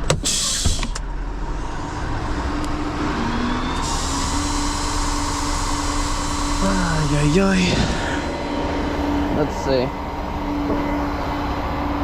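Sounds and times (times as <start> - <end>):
motor vehicle running: 0.0 - 12.0
hiss: 0.2 - 1.0, 3.8 - 7.4.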